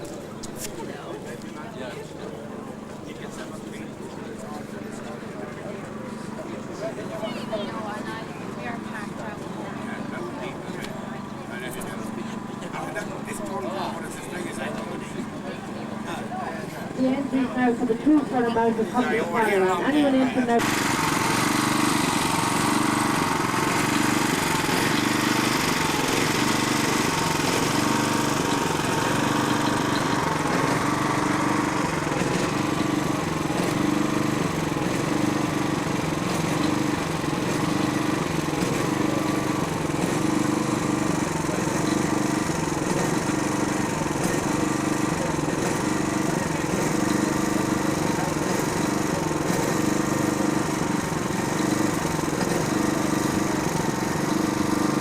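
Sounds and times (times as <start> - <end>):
tractor engine running: 16.9 - 55.0.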